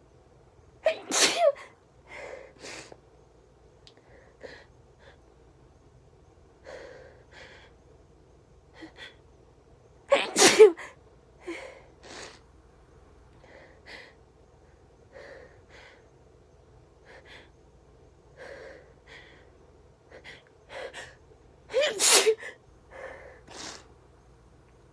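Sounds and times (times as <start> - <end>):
person sneezing loudly: 0.9 - 1.6, 10.1 - 10.8, 21.7 - 22.4.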